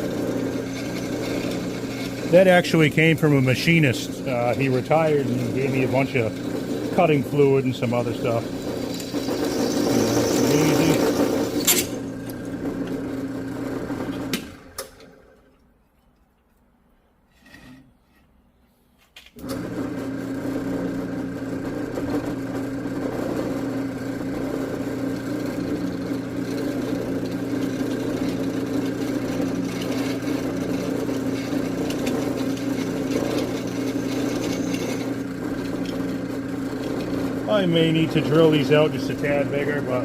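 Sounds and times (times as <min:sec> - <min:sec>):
electric drill drilling into steel: 0:00.0 - 0:02.4, 0:04.3 - 0:13.0, 0:24.7 - 0:39.8.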